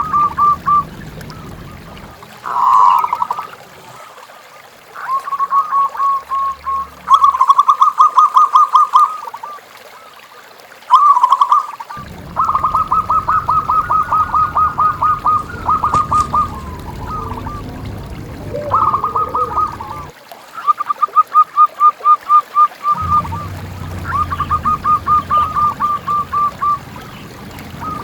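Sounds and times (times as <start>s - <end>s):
dove cooing: 0.0s - 4.1s, 12.0s - 20.1s, 22.9s - 28.0s.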